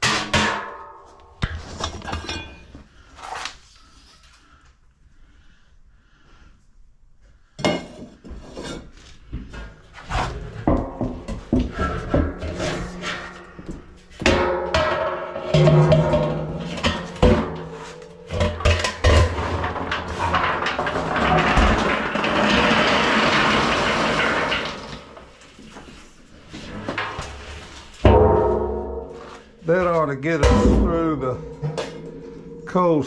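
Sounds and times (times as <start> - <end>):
feed pellets clattering: 14.8 - 25.4
feed pellets rushing pour: 19.4 - 25.3.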